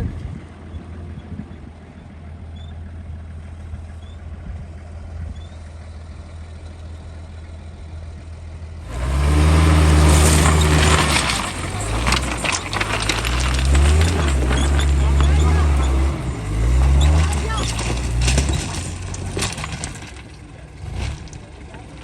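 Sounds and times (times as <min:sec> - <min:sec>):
engine running low: 0:00.0 - 0:22.0
engine revving hard: 0:08.8 - 0:20.0.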